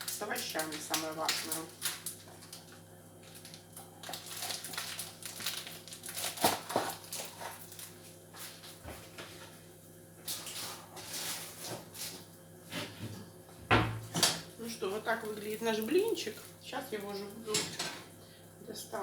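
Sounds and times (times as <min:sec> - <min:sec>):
utensils and dishes clattering: 0:17.5 - 0:18.0.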